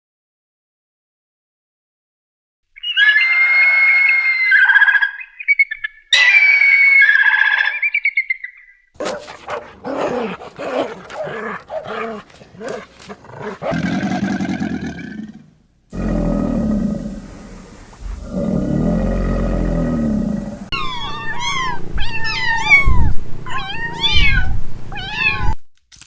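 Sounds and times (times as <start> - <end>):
animal yelping calls: 2.8 - 13.8
animal low grunting calls: 9.0 - 17.3.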